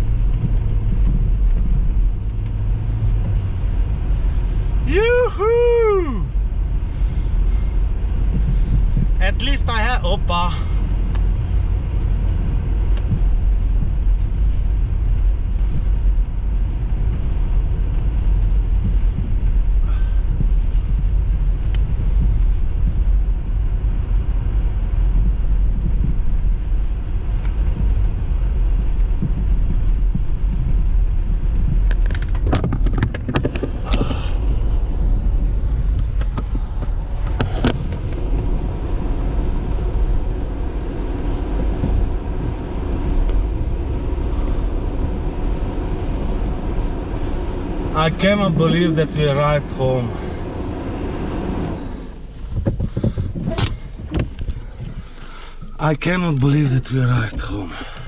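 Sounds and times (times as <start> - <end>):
car driving rumble: 0.0 - 58.0
sharp clicks and knocks: 31.8 - 34.2, 52.5 - 56.5.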